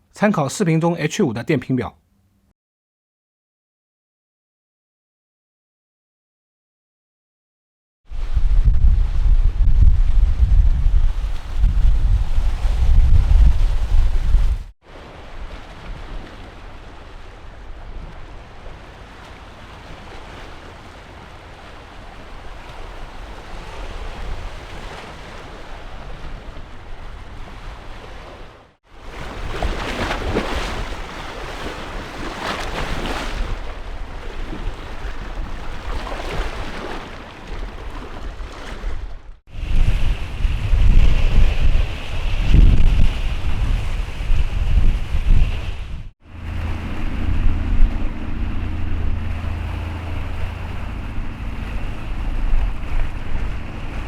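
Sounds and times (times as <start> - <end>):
wind rumble on microphone: 8.1 - 54.0
surf washing on shore: 11.1 - 54.0.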